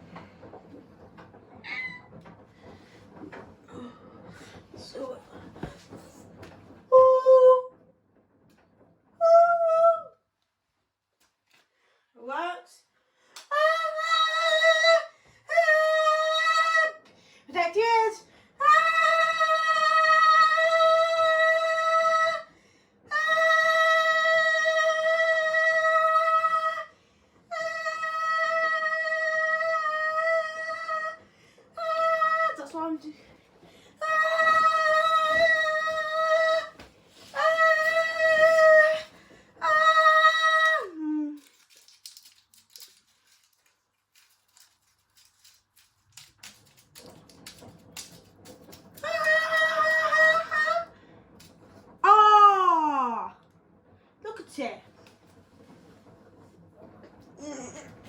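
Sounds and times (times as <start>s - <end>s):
washing machine high-pitched whine: 0.0s - 10.4s, 13.5s - 41.9s, 42.7s - 58.0s
low rumble: 0.0s - 11.1s, 18.2s - 58.0s
scattered clicks: 41.4s - 49.3s.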